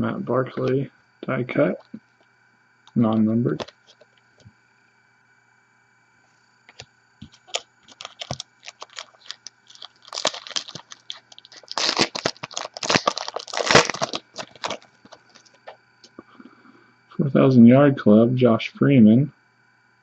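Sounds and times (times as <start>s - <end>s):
foil wrapper crinkling and tearing: 7.3s - 15.7s.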